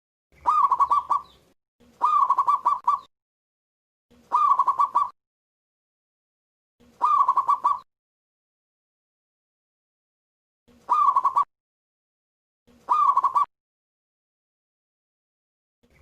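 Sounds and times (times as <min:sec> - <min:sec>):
dove cooing: 0:00.4 - 0:03.1, 0:04.2 - 0:05.2, 0:06.8 - 0:07.9, 0:10.7 - 0:11.5, 0:12.8 - 0:13.5.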